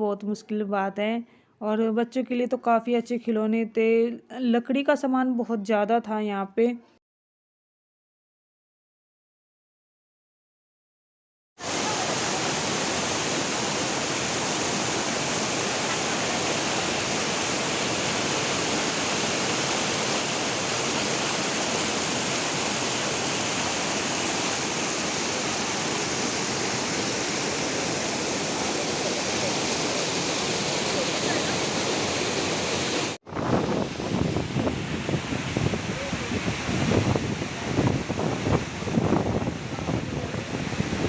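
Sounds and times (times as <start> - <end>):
waterfall rushing: 11.6 - 41.0.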